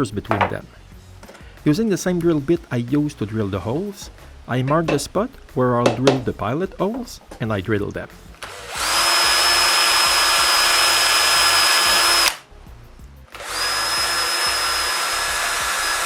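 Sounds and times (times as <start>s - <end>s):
power drill whining: 8.4s - 12.4s, 13.3s - 16.0s.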